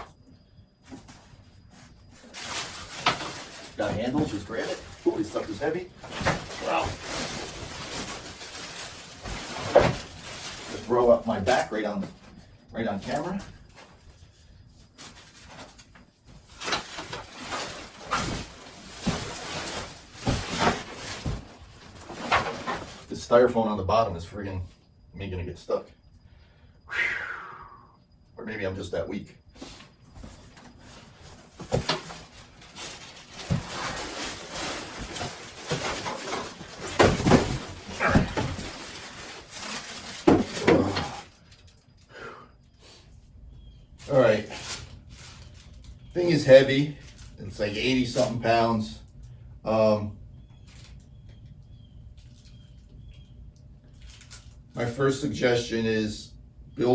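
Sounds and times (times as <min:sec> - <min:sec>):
cardboard and styrofoam rustling: 0:00.8 - 0:24.0, 0:29.6 - 0:41.7, 0:44.0 - 0:48.9.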